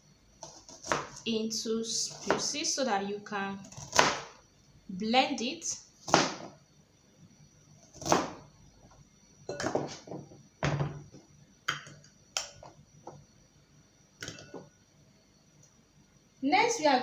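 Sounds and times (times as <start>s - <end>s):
knife slicing onion on board: 0.4s - 1.2s, 2.1s - 2.5s, 3.7s - 4.3s, 6.1s - 6.5s, 7.9s - 8.4s.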